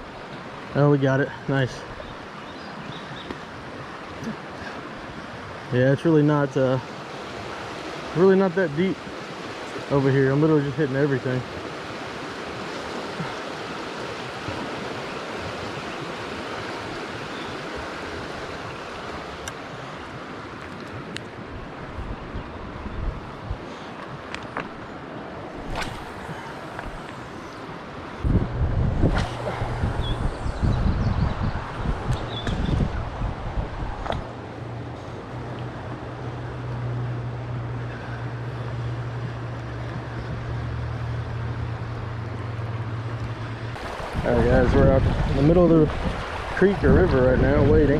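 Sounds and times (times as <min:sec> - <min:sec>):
water rushing over rocks: 0:00.0 - 0:22.8, 0:23.4 - 0:36.8, 0:39.4 - 0:47.9
wind buffeting microphone: 0:17.3 - 0:34.4, 0:39.2 - 0:47.9.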